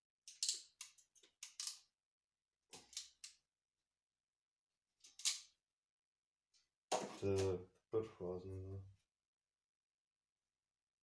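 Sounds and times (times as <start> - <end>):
clicks and scrapes of tools: 0.3 - 1.9, 2.7 - 3.4, 5.0 - 5.5.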